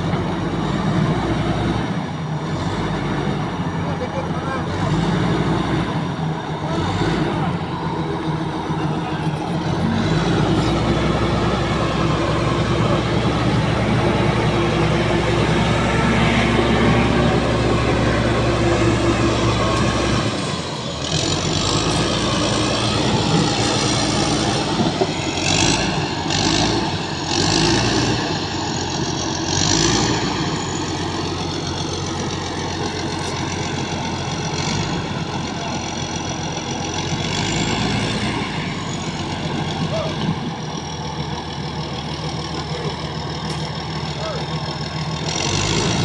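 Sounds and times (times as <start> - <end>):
bulldozer diesel engine running: 0.0 - 46.0.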